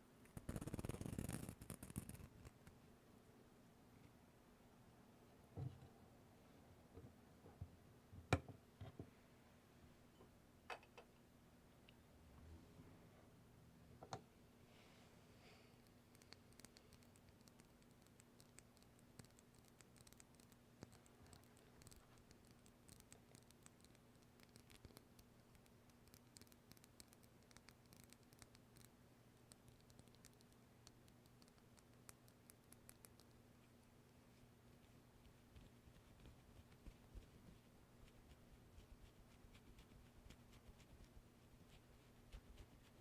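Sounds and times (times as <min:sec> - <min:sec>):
small objects clicking and scratching: 0:00.3 - 0:02.7.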